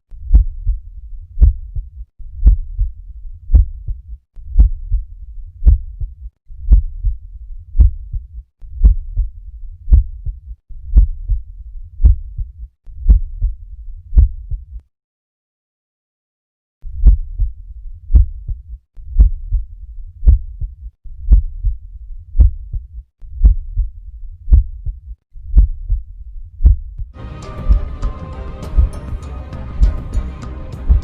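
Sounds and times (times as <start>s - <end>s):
heartbeat: 0.1s - 14.8s, 16.9s - 30.2s, 30.8s - 31.0s.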